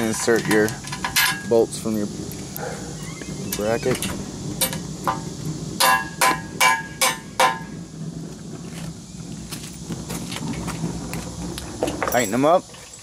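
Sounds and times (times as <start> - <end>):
metal-on-metal clinks: 11.8 - 13.0.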